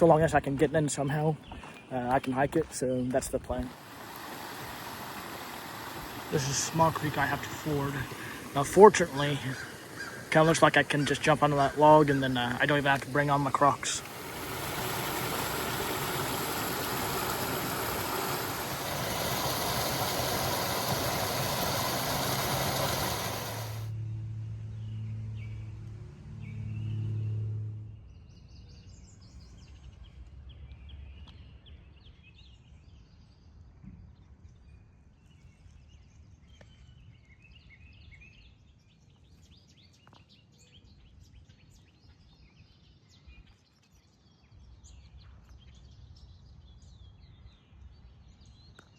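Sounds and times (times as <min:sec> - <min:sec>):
birds chirping: 0:00.0 - 0:23.9
loud steady rushing noise: 0:04.0 - 0:23.9.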